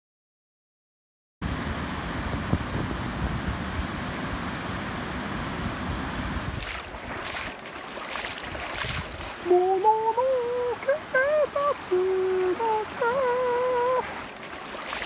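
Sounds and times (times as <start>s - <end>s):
wind buffeting microphone: 1.4s - 9.5s.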